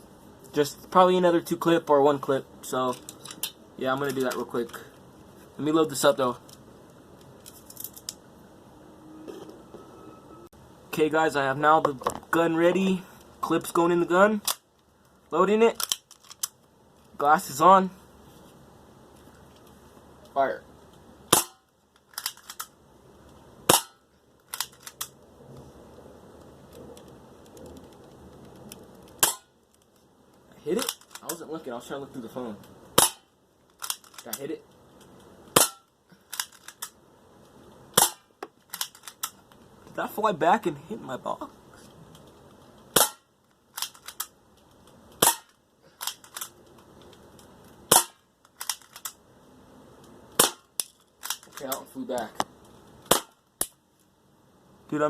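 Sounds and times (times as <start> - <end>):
bb ticking off metal target: 21.3 - 21.7, 23.6 - 24.1, 29.2 - 29.6, 33.0 - 33.3, 35.5 - 36.0
bb pistol shots: 21.3 - 22.7, 23.7 - 25.0, 29.2 - 29.5, 33.0 - 34.0, 35.5 - 36.5, 37.9 - 39.2, 42.9 - 44.3, 45.2 - 46.5, 47.9 - 49.1, 50.4 - 51.4, 53.1 - 53.4.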